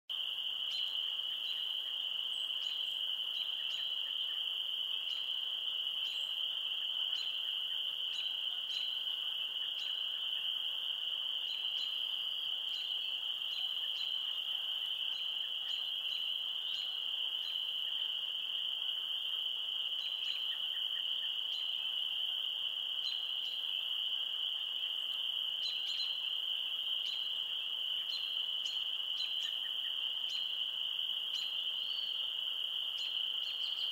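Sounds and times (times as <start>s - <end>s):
frogs chorus trilling: 0.1s - 33.9s.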